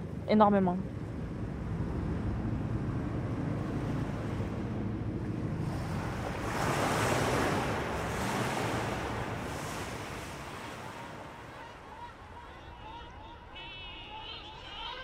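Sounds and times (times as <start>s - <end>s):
low rumble of surf: 0.0s - 15.0s
sea waves breaking: 1.6s - 15.0s.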